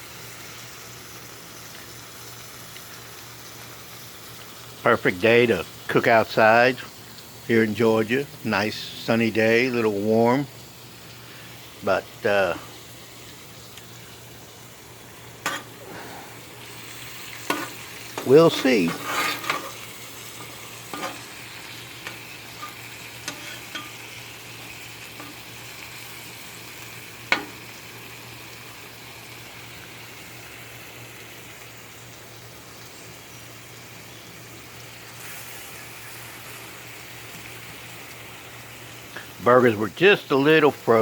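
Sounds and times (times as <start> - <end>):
food sizzling on a griddle: 0.0 - 41.0.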